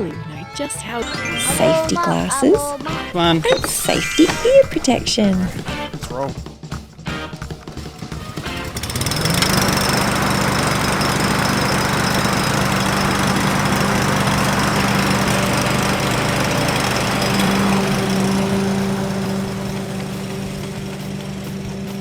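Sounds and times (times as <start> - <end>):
lawn mower engine running: 7.1 - 22.0.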